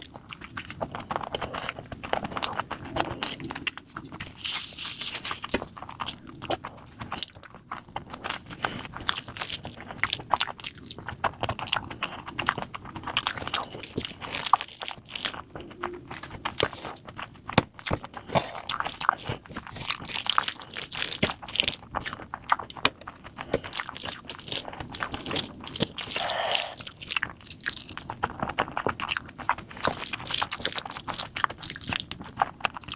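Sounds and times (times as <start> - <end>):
person chewing food: 0.0 - 32.9
wet mouth clicks: 26.0 - 26.9.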